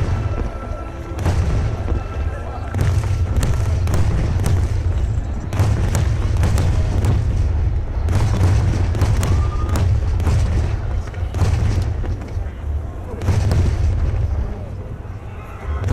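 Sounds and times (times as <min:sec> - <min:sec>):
sharp firework cracks and bangs: 0:00.0 - 0:14.7
deep booming fireworks bursts: 0:00.0 - 0:15.9.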